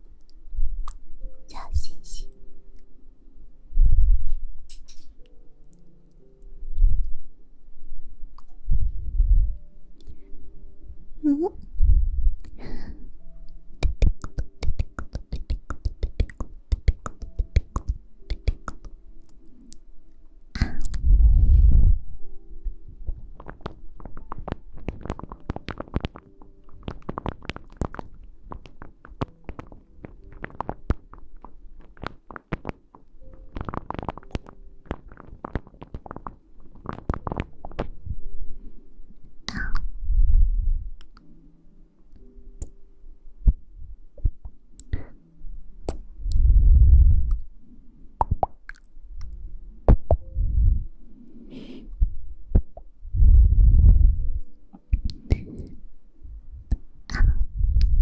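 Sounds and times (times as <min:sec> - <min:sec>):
crackling rustling taps on microphone: 0:23.1 - 0:38.0
low muffled thumps: 0:52.1 - 0:54.4.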